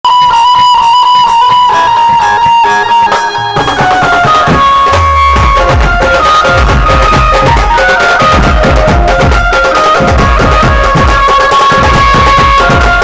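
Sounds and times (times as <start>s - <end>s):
plucked-string melody over a beat: 0.0s - 13.0s
heavy bass: 4.2s - 13.0s.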